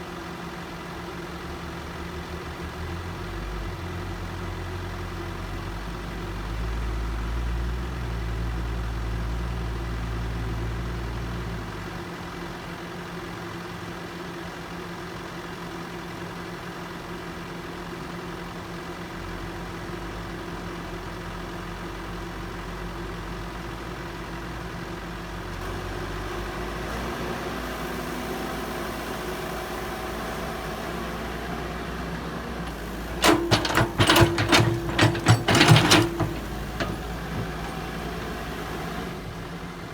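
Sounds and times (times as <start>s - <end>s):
heavy diesel engine running: 29.5s - 39.9s
loud clattering knocks: 33.1s - 38.0s.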